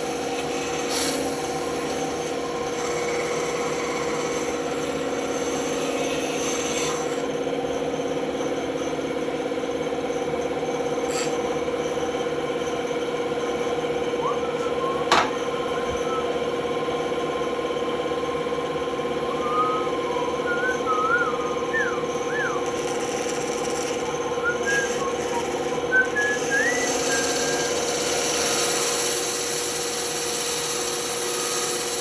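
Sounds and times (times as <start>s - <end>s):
wood cutting or sanding: 0.0s - 7.3s, 11.0s - 11.6s, 21.4s - 32.0s
power tool motor humming: 18.6s - 32.0s.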